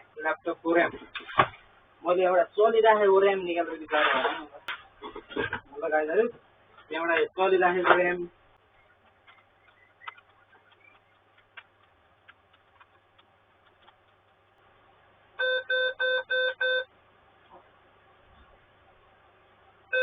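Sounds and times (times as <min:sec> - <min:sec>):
short laptop beeps: 0:15.4 - 0:16.9.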